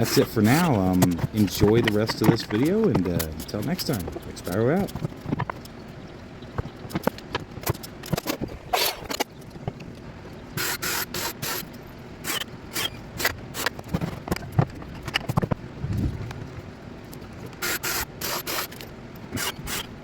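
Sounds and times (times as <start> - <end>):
sharp clicks and knocks on wood: 0.6 - 5.8, 6.6 - 10.0
short hissing bursts: 10.6 - 11.6.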